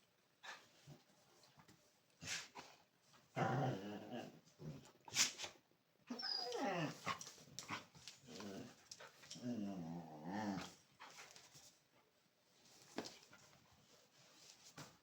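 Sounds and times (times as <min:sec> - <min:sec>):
dogs growling in play: 0:03.3 - 0:05.0, 0:06.5 - 0:10.9.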